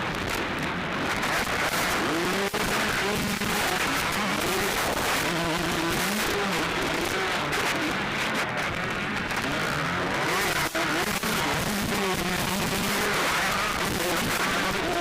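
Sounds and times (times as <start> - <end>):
motocross bike engines revving: 0.0 - 15.0.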